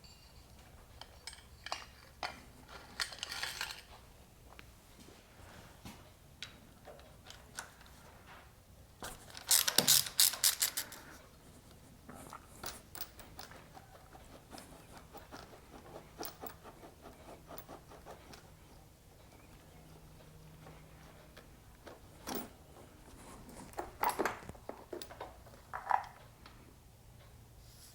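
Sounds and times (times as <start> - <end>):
hand tools clicking on metal parts: 0.0 - 3.9, 9.0 - 11.1.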